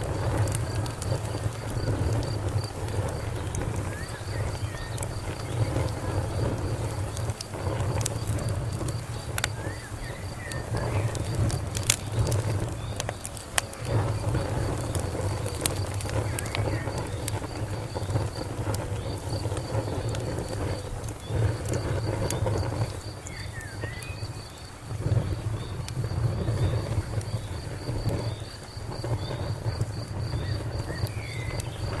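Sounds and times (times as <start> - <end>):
cricket chirping: 0.0 - 32.0
wood fire crackling and popping: 0.0 - 32.0.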